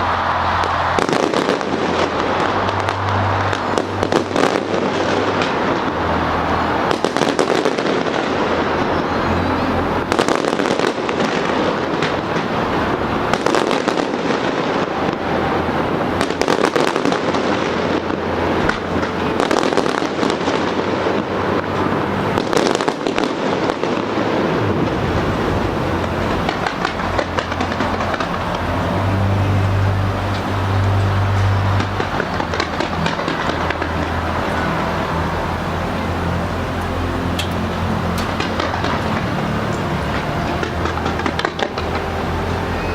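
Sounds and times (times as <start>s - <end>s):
rumble of explosions: 0.0s - 42.2s
fireworks bursting and crackling: 0.0s - 42.9s
steady low hum: 24.1s - 42.9s.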